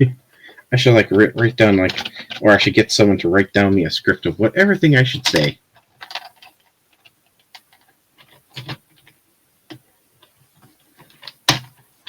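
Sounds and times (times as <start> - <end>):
plastic bricks clicking and knocking: 5.2 - 11.9.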